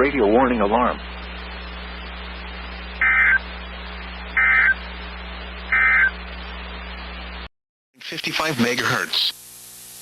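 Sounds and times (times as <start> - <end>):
low hum: 0.4 - 7.5
digital data bursts: 3.0 - 3.4, 4.4 - 4.8, 5.7 - 6.1
radio hiss: 8.0 - 10.0.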